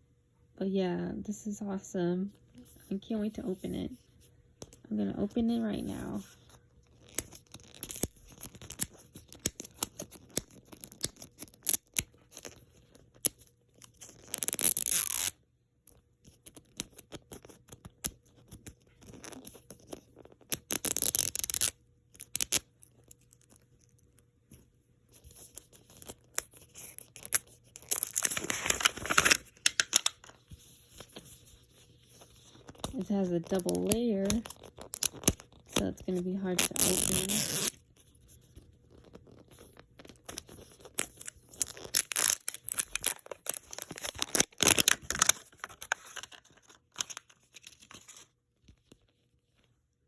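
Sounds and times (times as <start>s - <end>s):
scratching and clicking of wrapper: 6.8s - 24.3s, 25.2s - 30.4s, 32.1s - 37.8s, 38.5s - 49.0s
wrapper tearing rips: 14.0s - 15.4s, 20.5s - 22.6s, 26.0s - 30.3s, 36.5s - 37.8s, 40.0s - 48.2s.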